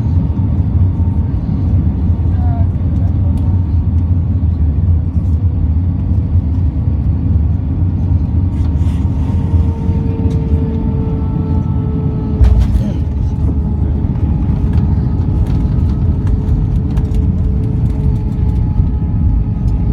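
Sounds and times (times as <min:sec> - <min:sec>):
airliner cabin rumble: 0:00.0 - 0:19.9.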